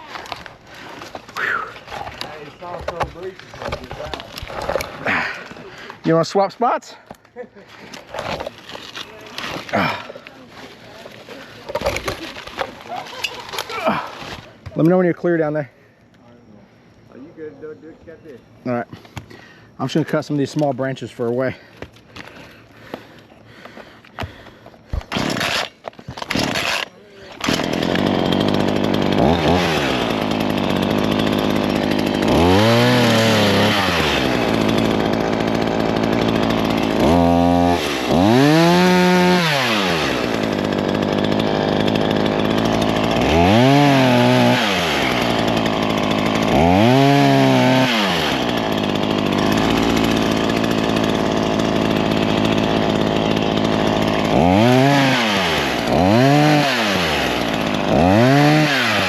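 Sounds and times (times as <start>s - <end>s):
chainsaw engine revving: 3.6s - 6.1s, 11.7s - 14.5s, 25.0s - 59.0s.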